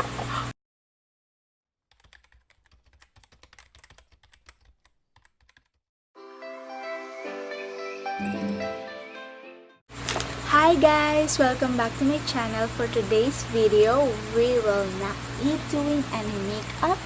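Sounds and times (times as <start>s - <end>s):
music with sustained notes: 6.2s - 9.8s.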